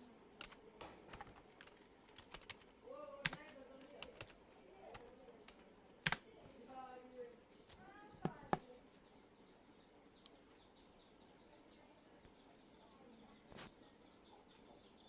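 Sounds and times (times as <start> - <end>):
faint birds chirping: 0.0 - 15.0
sharp clicks: 5.0 - 6.3.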